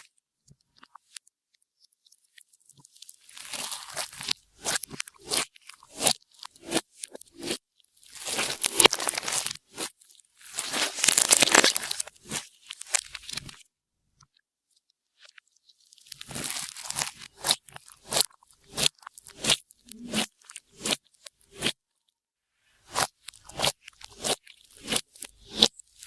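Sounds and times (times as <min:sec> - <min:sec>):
slime crackling and popping: 0:02.7 - 0:13.6, 0:16.0 - 0:21.7.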